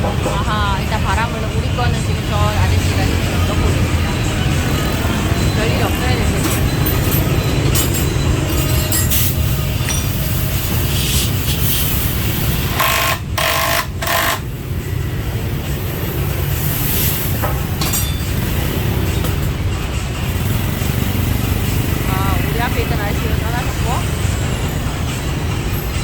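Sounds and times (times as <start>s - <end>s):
motorbike street traffic rumble: 0.0s - 26.0s
short bursts of hiss: 10.5s - 12.7s.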